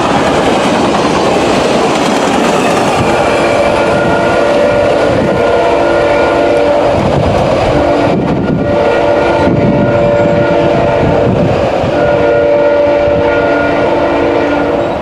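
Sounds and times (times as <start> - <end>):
rumble of passing train: 0.0 - 15.0
locomotive air horn chord: 3.3 - 7.0, 7.7 - 11.3, 11.9 - 15.0.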